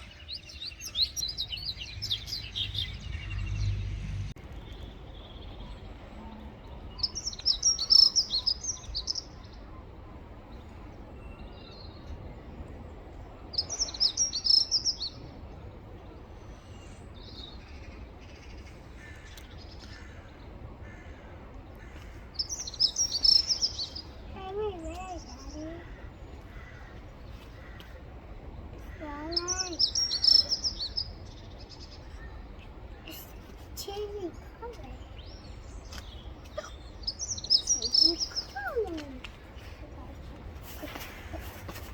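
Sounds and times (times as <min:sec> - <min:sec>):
bird rapid high chirps: 0:22.4 - 0:24.2, 0:29.0 - 0:31.3, 0:35.2 - 0:38.8.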